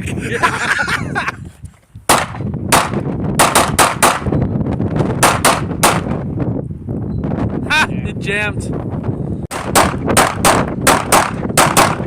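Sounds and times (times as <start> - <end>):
gunshots with echo: 2.1 - 4.3, 5.2 - 6.2, 9.5 - 12.0.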